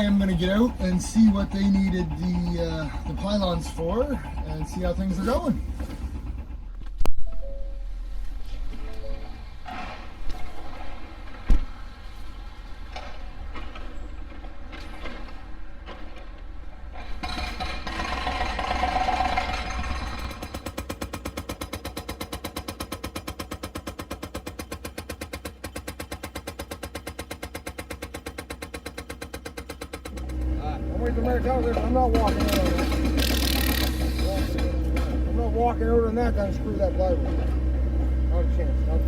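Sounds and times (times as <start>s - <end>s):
hydraulic breaker hammering concrete: 0.0s - 6.6s, 17.0s - 38.8s
excavator engine: 0.0s - 39.0s.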